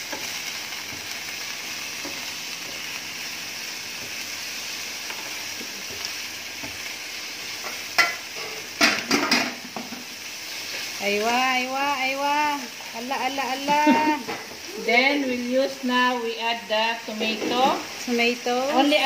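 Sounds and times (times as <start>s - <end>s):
food sizzling in a frying pan: 0.0s - 19.0s.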